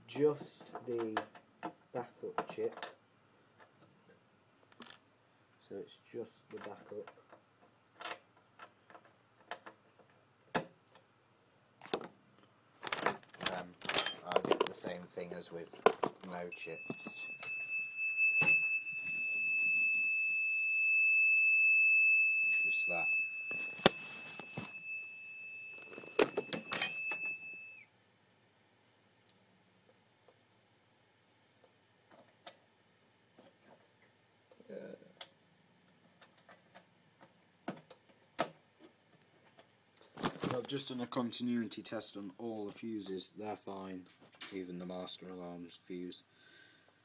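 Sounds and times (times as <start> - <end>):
handling clicks and knocks: 12.8 - 15.0, 15.6 - 17.6
high-pitched alarm panel tone: 16.5 - 27.8.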